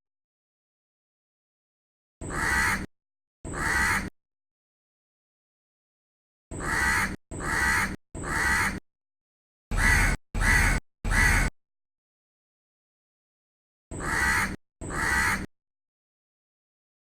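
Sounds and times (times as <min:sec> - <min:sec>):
crow cawing: 0:02.3 - 0:02.9, 0:03.6 - 0:04.1, 0:06.6 - 0:08.8, 0:09.7 - 0:11.5, 0:14.0 - 0:15.5.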